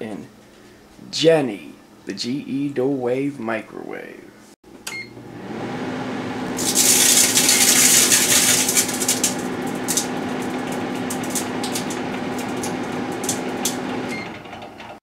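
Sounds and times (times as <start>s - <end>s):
microwave oven humming: 4.7s - 15.0s
sparking and crackling: 6.6s - 14.1s.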